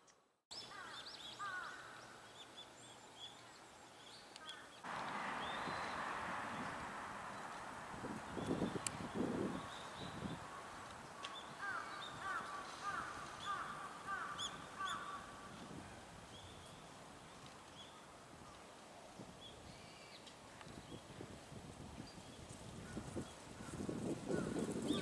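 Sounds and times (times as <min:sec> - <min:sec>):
small birds chirping: 0:00.8 - 0:15.6.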